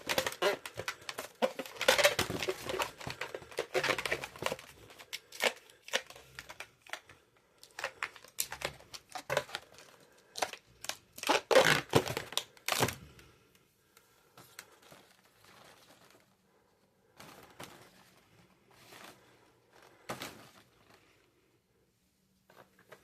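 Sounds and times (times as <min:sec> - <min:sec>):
rubber balloons rubbing: 0:00.0 - 0:05.6, 0:07.8 - 0:13.0.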